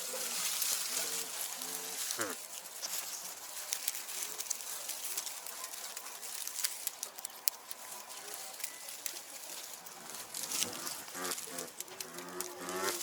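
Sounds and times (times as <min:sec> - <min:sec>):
farm animal calling: 0:00.0 - 0:03.4, 0:07.7 - 0:13.0
rustling in straw: 0:00.0 - 0:13.0.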